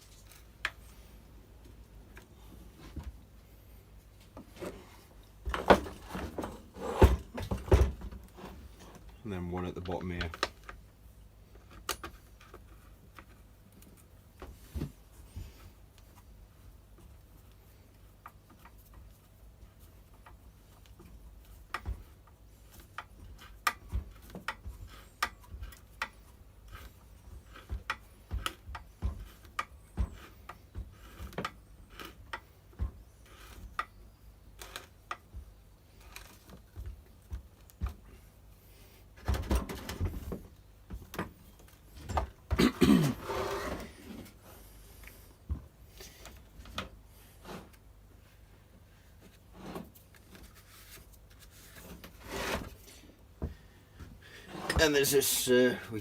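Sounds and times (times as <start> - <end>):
clicks and taps of tools and plastic: 9.7 - 10.8, 11.6 - 14.5, 20.2 - 34.0.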